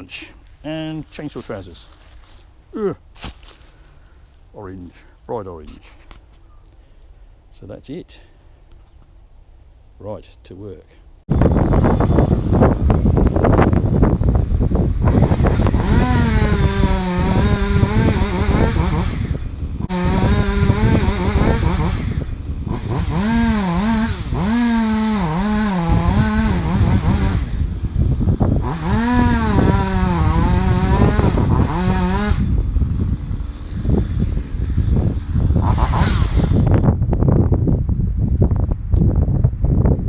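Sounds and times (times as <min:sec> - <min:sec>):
chainsaw cutting: 0:11.3 - 0:36.9.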